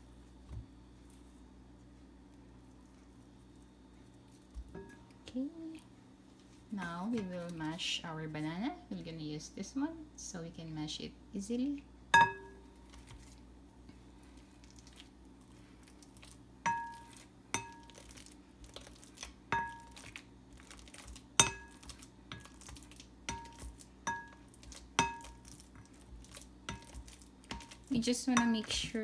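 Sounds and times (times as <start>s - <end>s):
masher clinking against bowl: 12.2s - 12.6s
masher mashing bananas: 14.2s - 29.0s.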